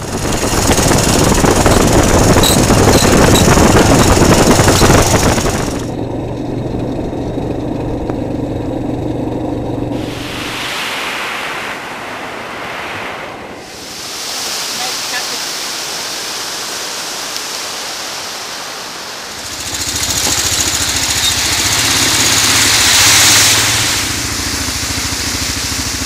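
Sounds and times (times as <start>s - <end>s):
atv engine running: 0.0s - 10.4s, 19.0s - 26.0s.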